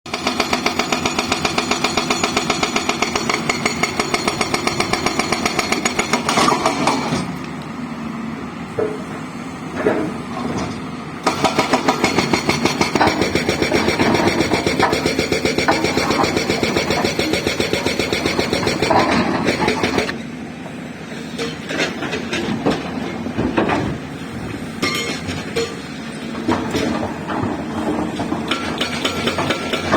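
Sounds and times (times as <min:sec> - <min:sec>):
hydraulic breaker hammering stone: 0:00.1 - 0:07.3, 0:11.2 - 0:20.2, 0:26.4 - 0:29.9
excavator engine running: 0:00.2 - 0:29.9
machine engine: 0:11.2 - 0:20.2.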